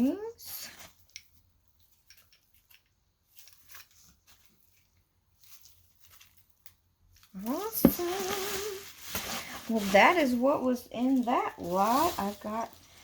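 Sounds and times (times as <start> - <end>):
small items clicking and rustling: 0.6 - 10.4.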